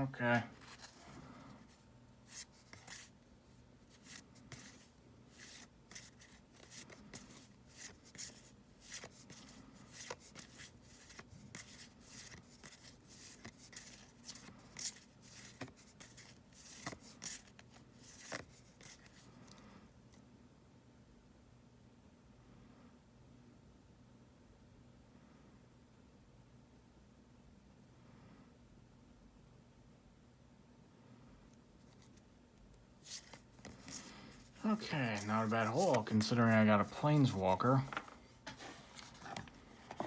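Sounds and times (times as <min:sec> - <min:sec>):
cards flipped through: 0:00.6 - 0:01.2, 0:02.3 - 0:03.1, 0:03.9 - 0:19.2, 0:33.0 - 0:40.0.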